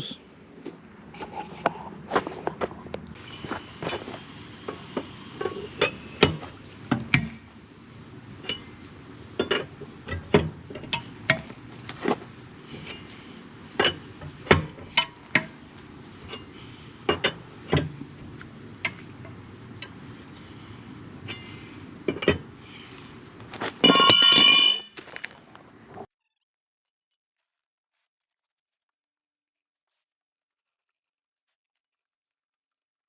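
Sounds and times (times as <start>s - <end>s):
lug wrench clinking on lug nuts: 1.2s - 7.5s, 8.4s - 15.6s, 23.6s - 26.0s.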